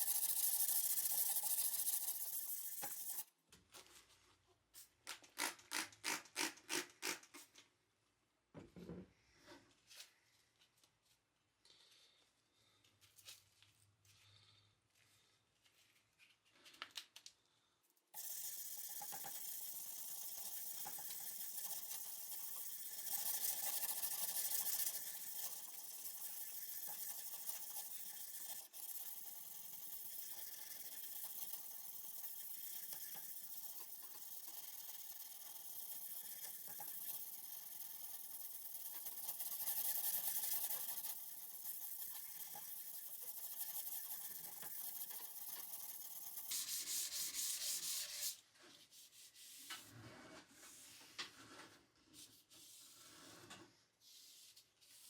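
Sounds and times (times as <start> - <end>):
sandpaper rubbing on steel: 0.0 - 3.2, 18.2 - 48.4.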